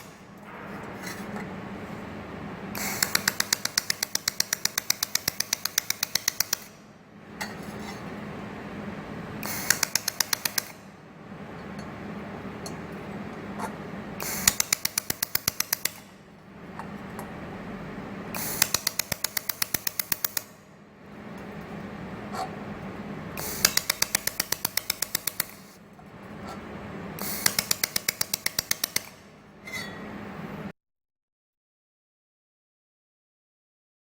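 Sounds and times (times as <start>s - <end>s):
steady machine hum: 0.0s - 30.7s
laser welder snapping: 2.8s - 6.7s, 9.4s - 10.8s, 14.2s - 16.1s, 18.4s - 20.6s, 23.4s - 25.8s, 27.2s - 29.2s.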